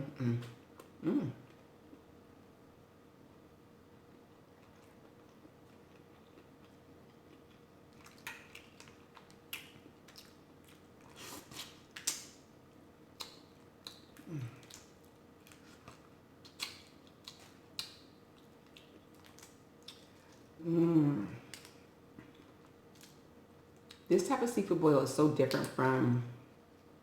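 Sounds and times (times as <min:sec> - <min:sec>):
chewing and biting crunches: 0:04.3 - 0:12.4, 0:13.2 - 0:20.5.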